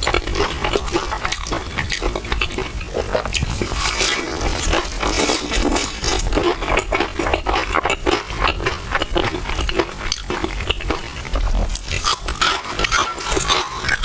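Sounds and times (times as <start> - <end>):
chewing and mouth smacks: 0.0 - 14.0
utensil scraping a bowl: 11.7 - 14.0.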